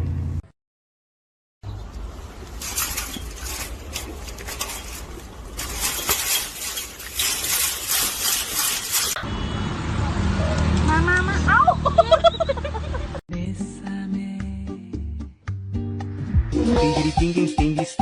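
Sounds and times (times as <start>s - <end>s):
small hard objects clinking: 2.6s - 9.2s.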